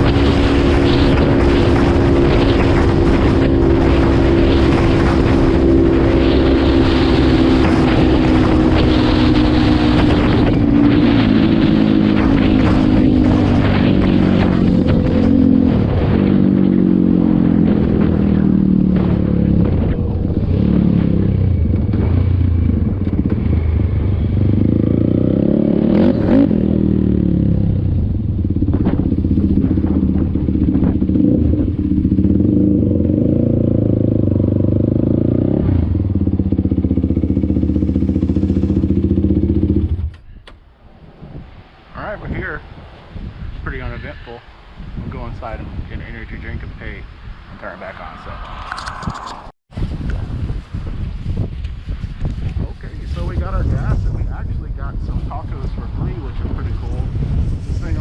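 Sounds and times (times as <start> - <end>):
quad bike engine running: 23.0 - 40.2.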